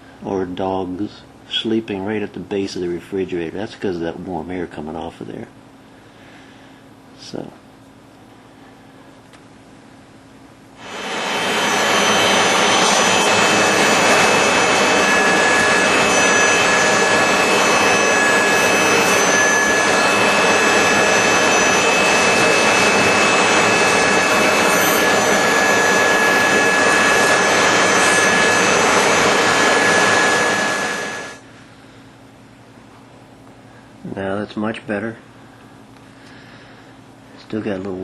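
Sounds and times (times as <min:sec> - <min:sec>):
vacuum cleaner whining: 0:10.8 - 0:31.5.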